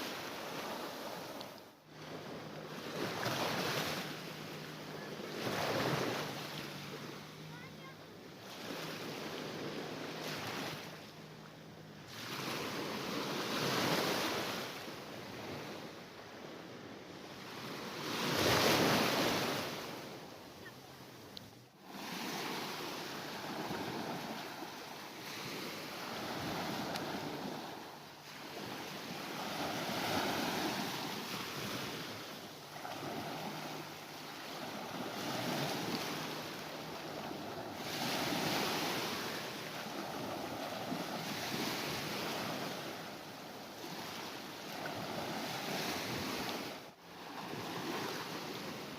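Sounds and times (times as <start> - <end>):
sea waves breaking: 0.0 - 48.9.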